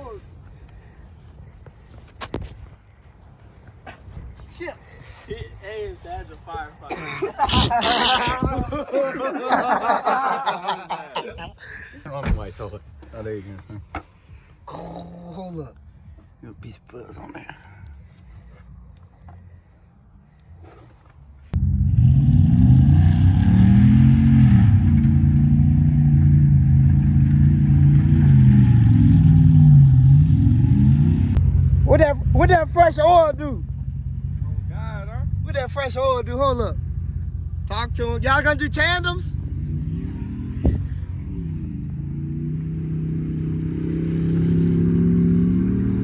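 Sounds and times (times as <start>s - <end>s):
car engine revving: 21.6s - 46.0s.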